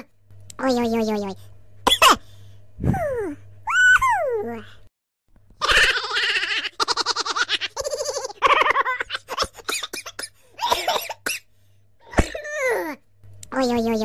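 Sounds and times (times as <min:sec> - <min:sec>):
cartoon characters giggling: 0:05.6 - 0:11.0.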